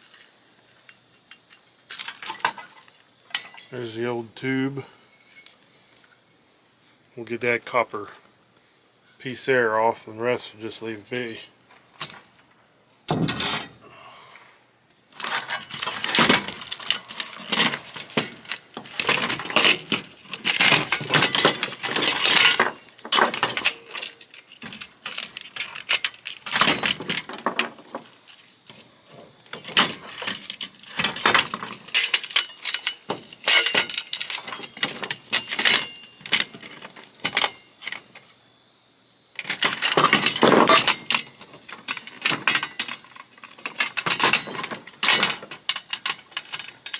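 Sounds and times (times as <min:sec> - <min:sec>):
metallic clicks and rattles: 0:15.2 - 0:28.1, 0:29.5 - 0:38.3, 0:39.4 - 0:46.9.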